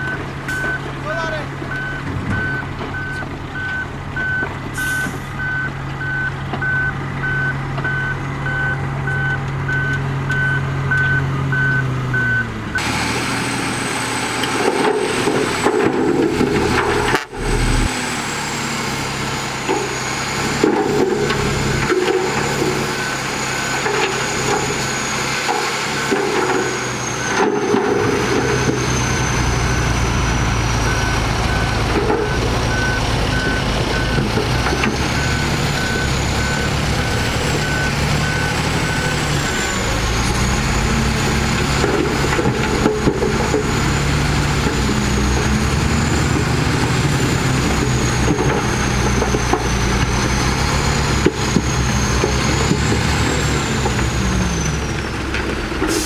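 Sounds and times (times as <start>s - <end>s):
reversing alarm beeping: 0.0s - 0.9s, 1.7s - 13.0s, 16.9s - 18.7s, 19.7s - 49.4s
diesel machinery engine: 0.0s - 56.0s.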